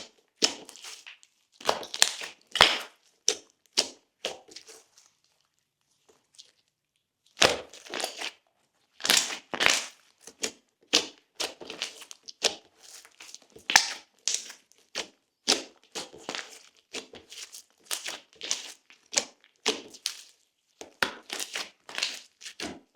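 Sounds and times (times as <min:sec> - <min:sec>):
slime squished by hand: 0:00.0 - 0:04.8, 0:09.0 - 0:20.3.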